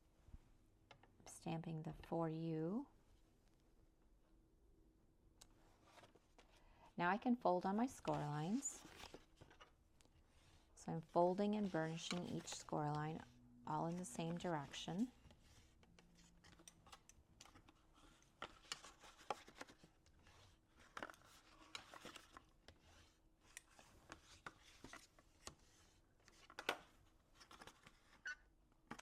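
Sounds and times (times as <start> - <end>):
cardstock being folded and creased: 13.9 - 29.0.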